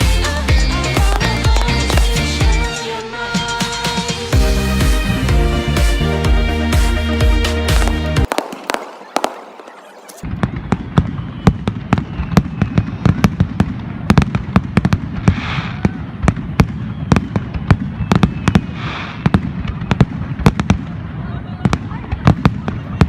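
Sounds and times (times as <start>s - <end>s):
fireworks banging: 0.0s - 2.8s, 7.6s - 23.0s
fireworks crackling hiss: 0.0s - 5.2s, 7.6s - 10.2s, 14.8s - 16.0s, 18.5s - 19.6s
electronic dance music: 0.0s - 10.3s.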